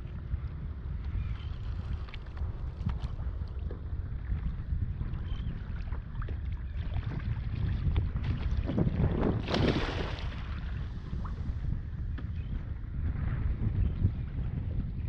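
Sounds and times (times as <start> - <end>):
wind buffeting microphone: 0.0 - 15.0
water sloshing against kayak: 1.0 - 12.3
water splash: 9.3 - 10.8.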